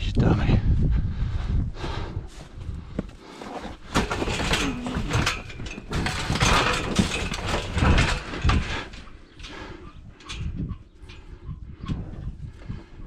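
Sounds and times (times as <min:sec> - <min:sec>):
cow hooves thudding: 0:03.0 - 0:09.5
metal panels clanging: 0:03.8 - 0:11.4.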